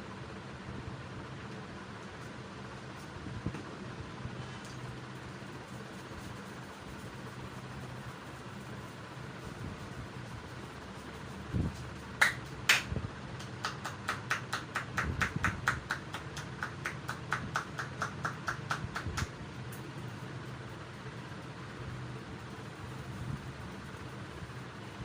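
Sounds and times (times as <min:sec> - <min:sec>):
steady low hum: 0:00.0 - 0:25.0
rapid percussive massage taps: 0:11.7 - 0:19.9
hands slapping body: 0:12.2 - 0:19.3.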